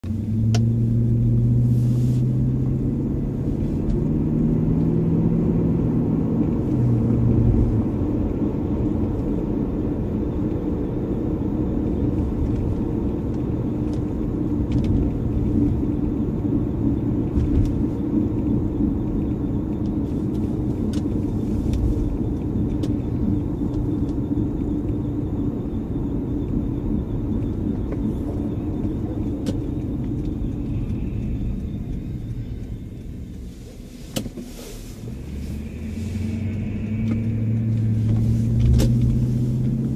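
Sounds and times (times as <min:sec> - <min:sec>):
car engine running: 0:00.0 - 0:39.9
grinding noise from car: 0:34.0 - 0:39.9.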